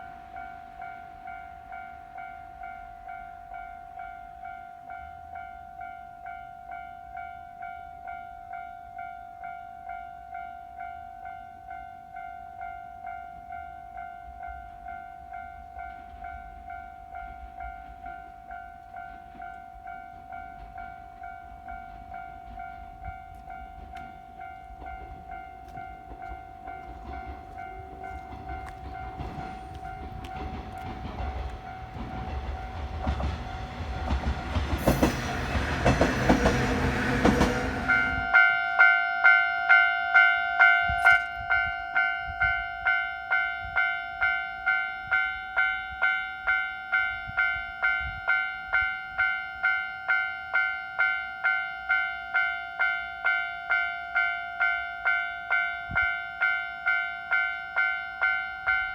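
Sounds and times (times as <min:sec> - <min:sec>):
train approaching: 0:00.0 - 0:58.9
level-crossing alarm dinging: 0:23.8 - 0:43.4
wheels clattering over rail joints: 0:26.0 - 0:38.2.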